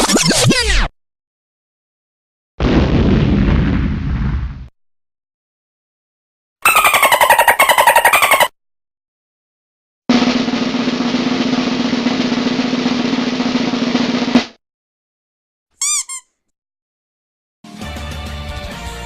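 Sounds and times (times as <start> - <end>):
high chirping effect: 6.6 - 8.5
snare drum roll: 10.1 - 14.6.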